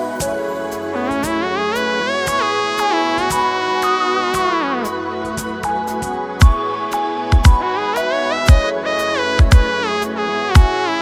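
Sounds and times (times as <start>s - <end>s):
synth melody: 0.0s - 11.0s
deep kick drum beats: 6.4s - 6.6s, 7.3s - 7.6s, 8.5s - 8.7s, 9.4s - 9.7s, 10.6s - 10.8s.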